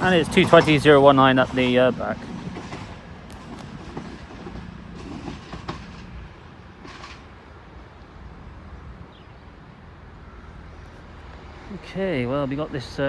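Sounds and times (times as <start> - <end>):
train rumbling: 0.0 - 13.0
wheel clicks and hisses: 6.8 - 7.4.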